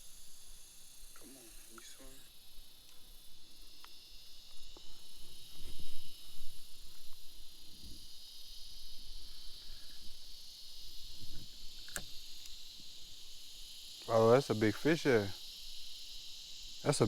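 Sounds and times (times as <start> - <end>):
insects droning: 0.0 - 17.0
sharp click: 11.8 - 12.6.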